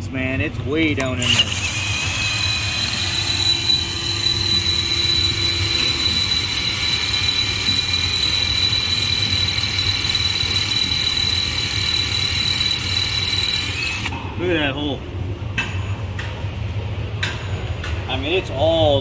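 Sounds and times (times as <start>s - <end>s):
drill bit cutting metal: 1.0s - 14.2s
power drill whining: 1.0s - 14.2s.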